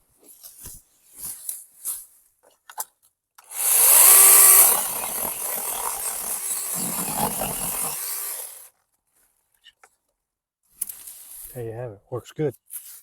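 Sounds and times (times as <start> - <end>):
chainsaw cutting wood: 3.4 - 8.7
electric chainsaw motor whining: 3.4 - 8.7.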